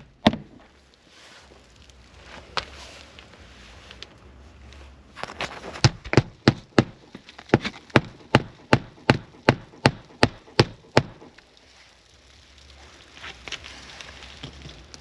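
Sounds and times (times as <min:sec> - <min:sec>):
hammer striking nails: 0:00.0 - 0:00.6, 0:05.8 - 0:11.3.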